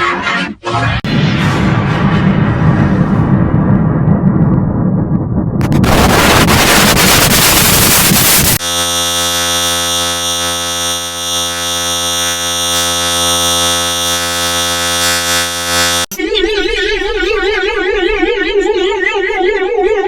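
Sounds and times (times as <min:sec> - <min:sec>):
loud electronic drone: 0:05.6 - 0:16.2
harsh distorted voice noise: 0:16.1 - 0:20.0.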